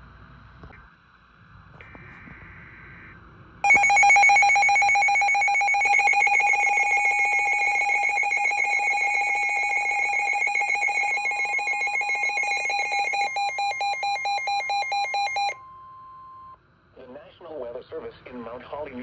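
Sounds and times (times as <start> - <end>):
radio alarm pulsing buzz: 3.6 - 15.6
faint tone: 3.7 - 15.6.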